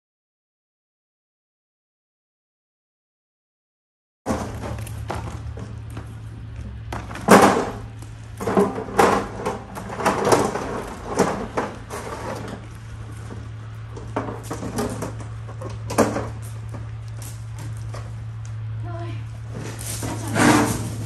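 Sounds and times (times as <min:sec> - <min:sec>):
steady low hum: 0:04.3 - 0:21.0.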